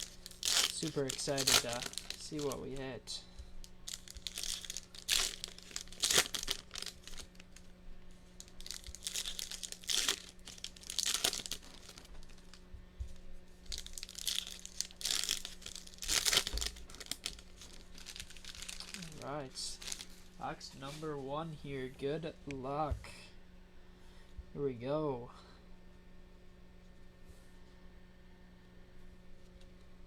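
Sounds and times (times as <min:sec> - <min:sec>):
plastic wrapping crinkling and tearing: 0:00.0 - 0:02.9, 0:03.6 - 0:07.7, 0:08.3 - 0:12.6, 0:13.6 - 0:21.0.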